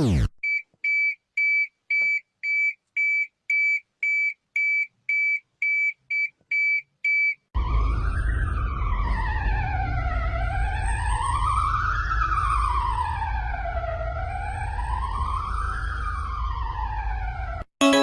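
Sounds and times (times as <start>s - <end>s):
siren wailing up and down: 0.0s - 0.4s, 7.6s - 17.7s.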